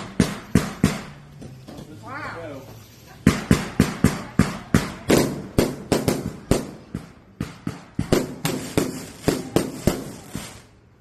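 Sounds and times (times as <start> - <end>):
firework bangs: 3.2 - 10.8.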